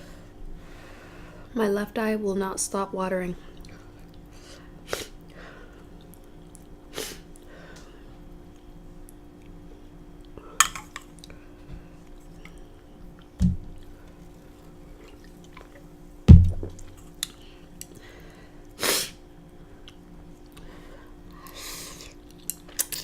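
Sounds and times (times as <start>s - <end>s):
dull low knocks: 16.3s - 16.8s.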